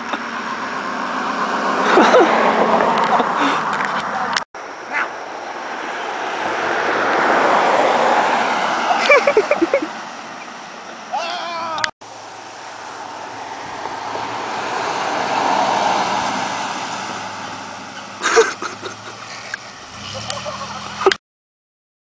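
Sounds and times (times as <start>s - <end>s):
car driving past: 0.3s - 3.7s, 5.3s - 10.8s, 12.1s - 18.2s.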